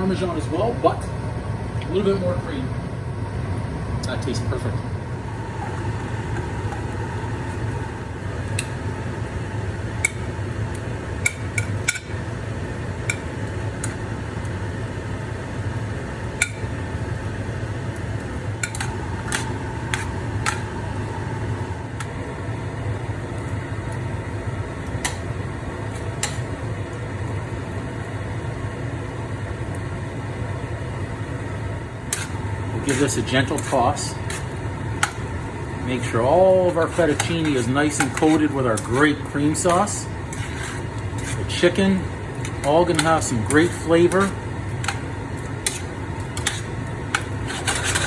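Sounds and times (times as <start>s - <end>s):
steady low hum: 0.0s - 48.0s
utensil clinking against pan: 42.4s - 45.0s.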